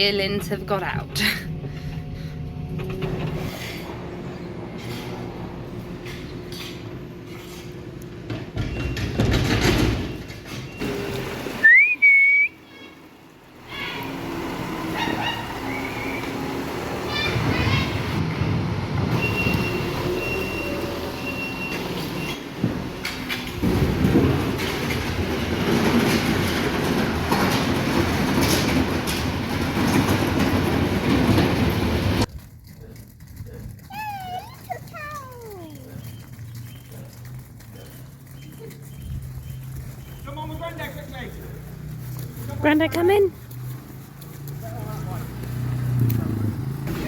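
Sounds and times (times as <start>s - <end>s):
diesel machinery rumbling: 0.0s - 32.4s, 33.7s - 47.0s
person whistling sharply: 11.6s - 12.6s
machinery clatter: 21.9s - 33.9s
metallic rattling and clatter: 23.0s - 44.4s.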